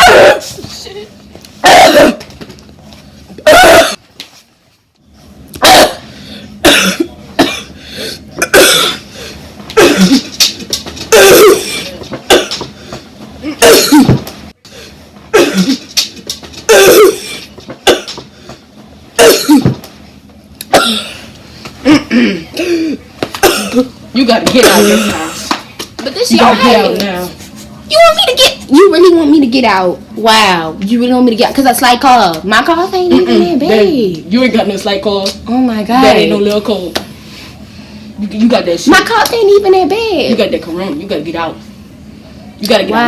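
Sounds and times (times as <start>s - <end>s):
person coughing harshly: 1.6s - 2.2s, 3.4s - 4.0s, 5.6s - 7.8s, 8.4s - 9.1s, 9.8s - 10.4s, 11.1s - 12.7s, 13.4s - 14.2s, 15.3s - 15.9s, 16.7s - 18.2s, 19.2s - 19.8s, 20.7s - 23.9s, 24.6s - 25.4s.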